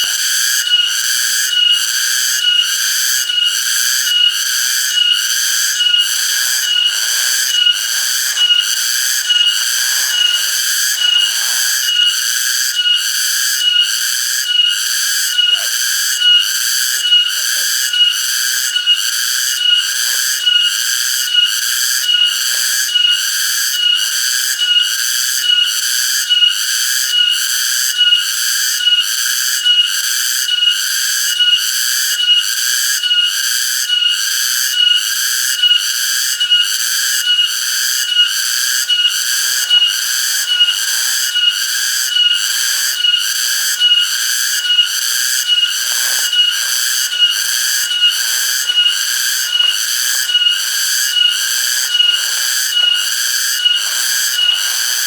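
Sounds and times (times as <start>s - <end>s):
cicadas calling: 0.0s - 55.0s.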